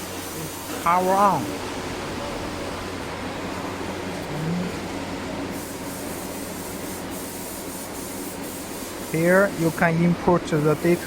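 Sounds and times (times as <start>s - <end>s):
machinery hum: 0.0s - 7.2s.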